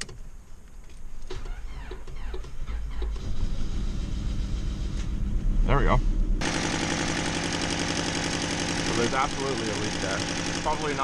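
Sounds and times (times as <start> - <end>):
engine cranking and running rough: 6.4 - 11.0.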